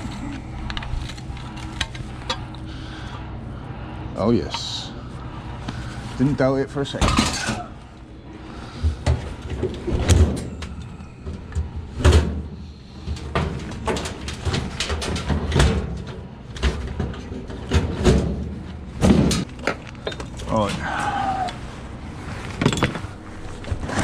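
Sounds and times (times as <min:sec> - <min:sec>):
scrap metal knocks and rattles: 0:11.6 - 0:20.3.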